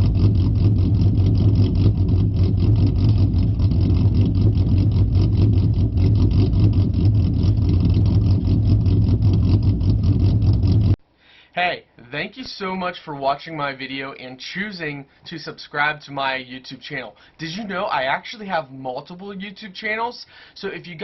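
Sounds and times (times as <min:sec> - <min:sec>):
car exhaust drone: 0:00.0 - 0:11.0.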